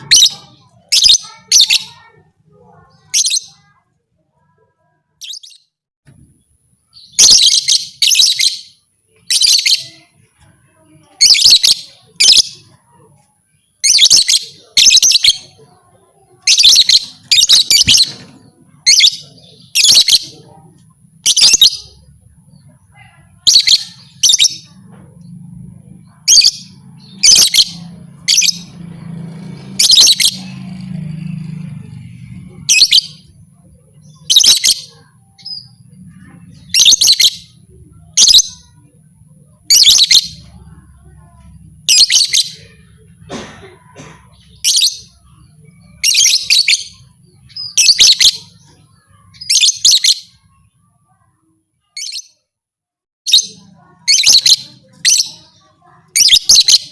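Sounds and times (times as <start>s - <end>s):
lovebird shrill chirping: 0.0s - 2.0s, 5.2s - 5.7s, 7.0s - 9.9s, 13.8s - 15.5s, 16.4s - 18.2s, 18.8s - 20.3s, 21.2s - 22.0s, 23.4s - 24.7s, 26.1s - 28.8s, 34.1s - 35.8s, 36.6s - 37.5s.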